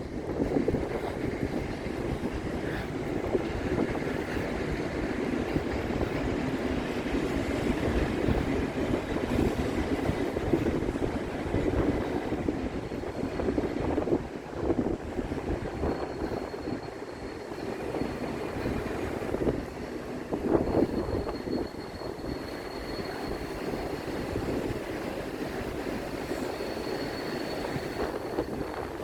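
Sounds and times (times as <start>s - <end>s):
train rumbling: 0.0s - 29.0s
wind buffeting microphone: 0.0s - 29.0s.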